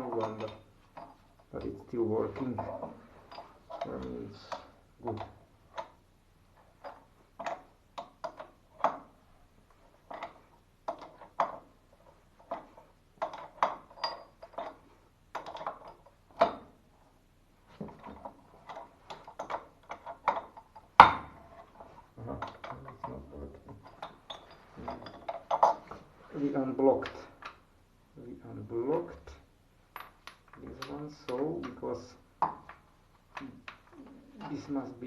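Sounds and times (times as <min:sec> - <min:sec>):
metal clinks and taps: 0:00.0 - 0:16.8, 0:17.8 - 0:26.0, 0:29.9 - 0:34.7.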